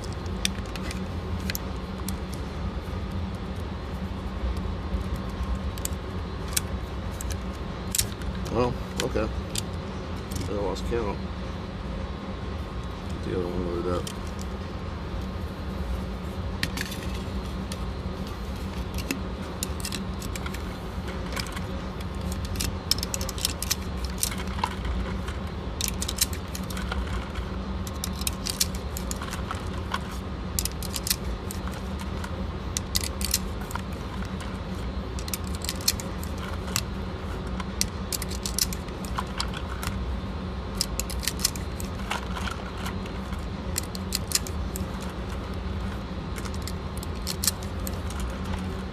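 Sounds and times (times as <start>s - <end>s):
steady low hum: 0.0s - 48.9s
cartridges clicking into magazine: 40.8s - 41.9s.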